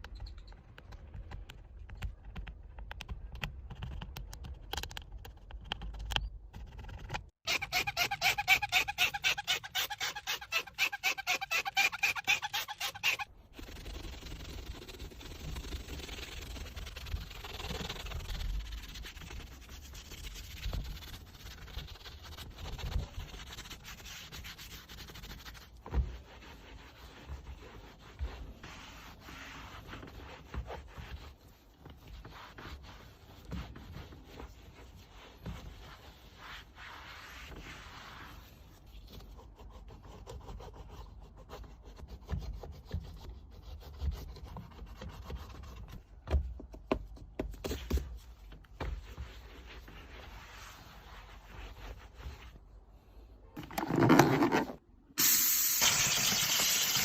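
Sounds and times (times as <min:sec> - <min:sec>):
hand scrubbing car surfaces: 0:07.8 - 0:38.9.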